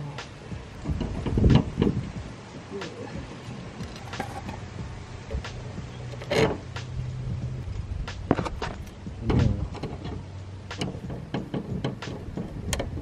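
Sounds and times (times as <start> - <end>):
number plate knocks and clicks: 8.3 - 13.0.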